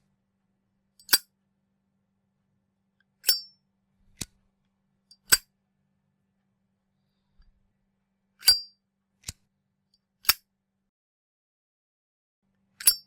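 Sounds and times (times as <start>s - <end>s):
lighter lid clicking open and shut: 12.8s - 13.0s.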